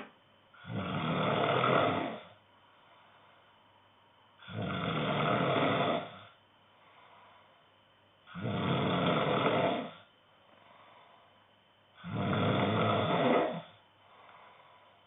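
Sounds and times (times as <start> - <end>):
man snoring: 0.6 - 2.4, 4.4 - 6.4, 8.3 - 10.1, 12.0 - 14.6.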